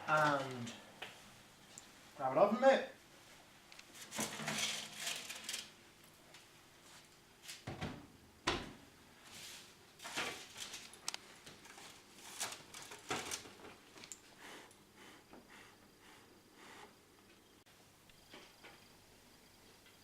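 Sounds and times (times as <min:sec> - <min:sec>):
brushing noises: 0:09.2 - 0:10.2.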